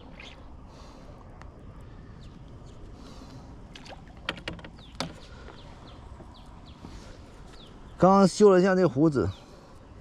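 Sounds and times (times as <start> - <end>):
faint bird chirps: 0.0 - 0.6, 1.3 - 3.0
outdoor background noise: 0.0 - 10.0.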